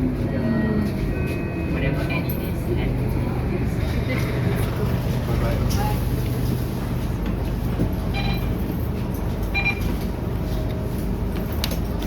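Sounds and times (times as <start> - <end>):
bus engine and road rumble: 0.0 - 12.0.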